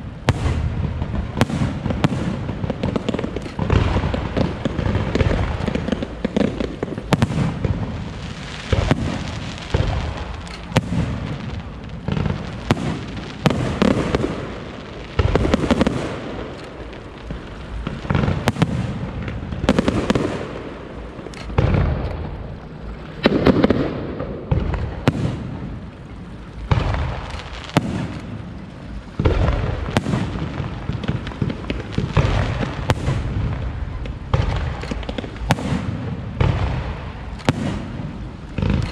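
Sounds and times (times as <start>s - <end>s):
fireworks booming: 0.0s - 38.9s
fireworks crackling and sizzling: 0.0s - 38.9s.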